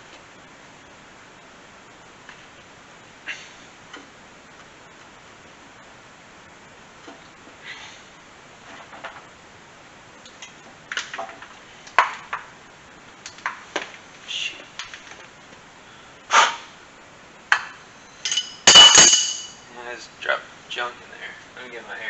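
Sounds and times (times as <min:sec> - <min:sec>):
metal tools clicking and clinking: 0:18.2 - 0:19.6
ringing metal clink: 0:18.2 - 0:19.7.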